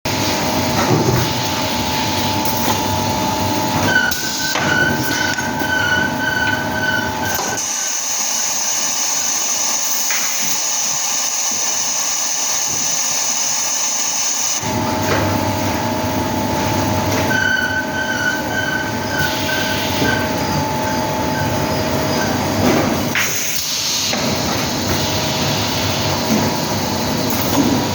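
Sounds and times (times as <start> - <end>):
machine mechanical drone: 0.1 - 27.9
machine whining tones: 0.1 - 27.9
high squeal: 3.2 - 7.7, 17.3 - 22.6.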